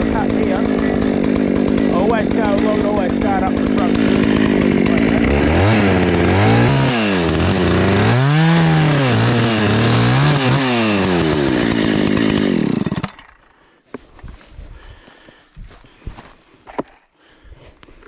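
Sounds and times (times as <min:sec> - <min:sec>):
chainsaw cutting wood: 0:00.0 - 0:14.4.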